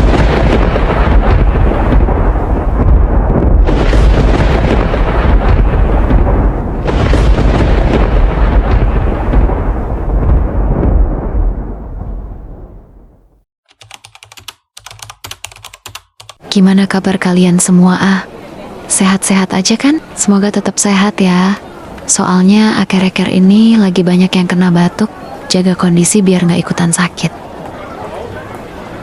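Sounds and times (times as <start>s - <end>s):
rolling thunder: 0.0s - 13.4s.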